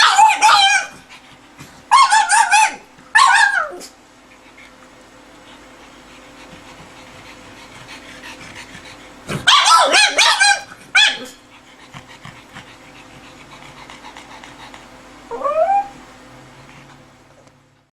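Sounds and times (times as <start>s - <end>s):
dog crying: 0.0s - 1.0s, 1.9s - 4.0s, 9.4s - 11.4s, 15.3s - 16.0s.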